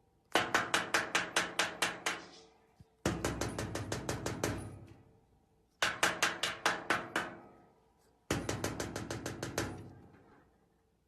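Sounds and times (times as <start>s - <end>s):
rapid sharp knocking: 3.1s - 4.7s, 5.8s - 7.4s, 8.3s - 10.0s.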